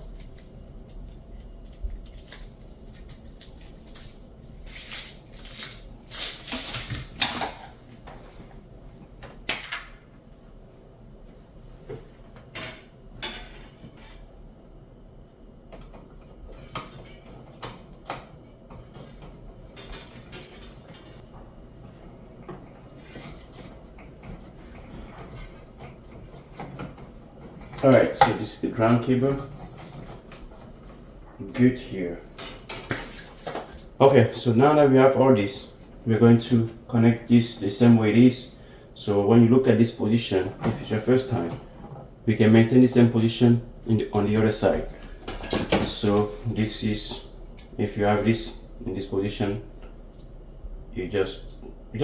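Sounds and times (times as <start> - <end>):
rustling and scraping: 0.0 - 8.9, 29.2 - 31.1, 32.3 - 34.0.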